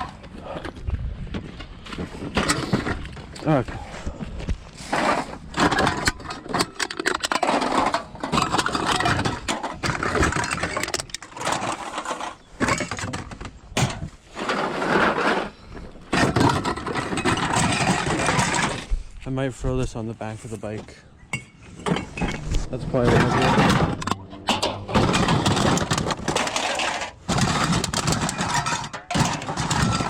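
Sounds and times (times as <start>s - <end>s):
cans clattering: 23.0s - 30.0s.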